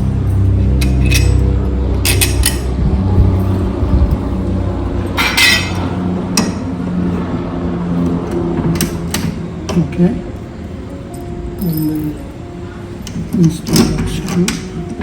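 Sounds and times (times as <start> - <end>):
metal hardware clinking: 0.3 - 2.7, 5.2 - 6.5.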